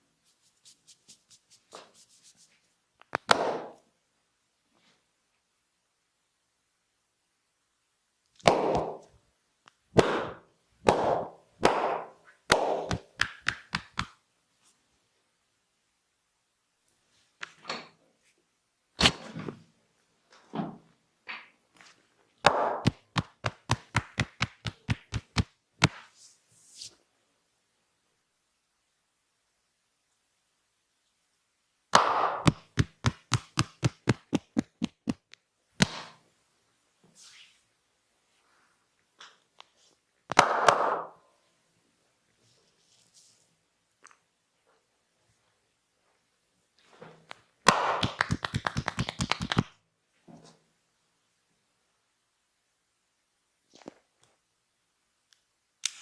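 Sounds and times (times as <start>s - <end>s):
hand slaps on body: 3.1s - 3.8s, 8.4s - 9.1s, 10.0s - 14.2s, 22.4s - 26.1s, 40.3s - 41.1s, 47.7s - 49.7s
sharp massage knocks: 8.5s - 9.0s, 10.0s - 14.2s, 22.5s - 26.0s, 32.0s - 35.2s, 47.7s - 49.7s.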